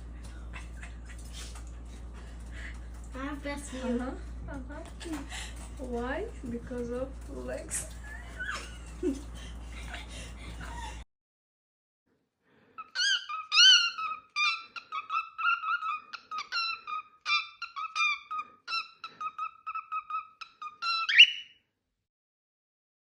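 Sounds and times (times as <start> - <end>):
bird shrill repeated calls: 12.8 - 21.6.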